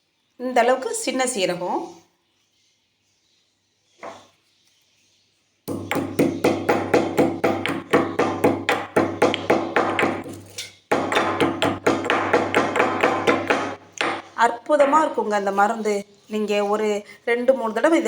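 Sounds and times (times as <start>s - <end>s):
pestle pounding in a mortar: 5.7s - 15.2s.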